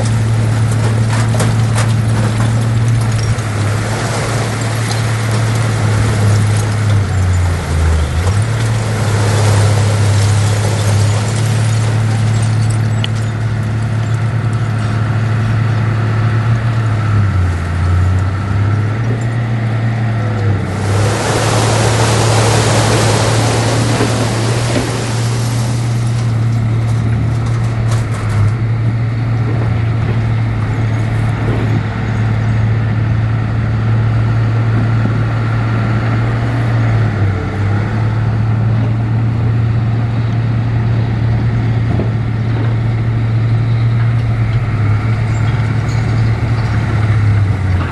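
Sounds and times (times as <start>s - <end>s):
heavy diesel engine droning: 0.0s - 47.9s
loud rushing noise: 20.5s - 26.5s.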